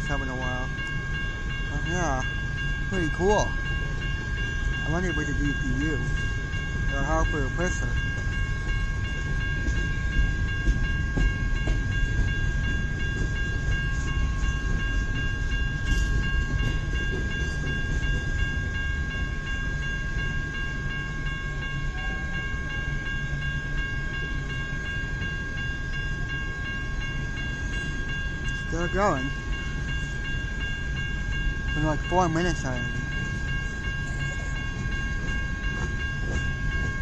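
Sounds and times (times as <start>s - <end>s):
train wheels rumbling on rail: 0.0s - 37.0s.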